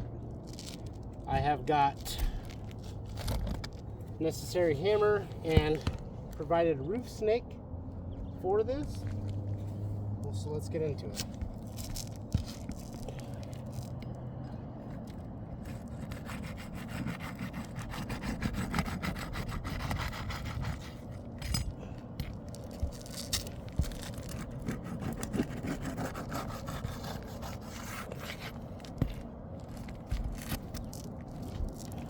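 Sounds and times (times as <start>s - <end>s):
pry tool scraping shingles: 15.6s - 32.0s.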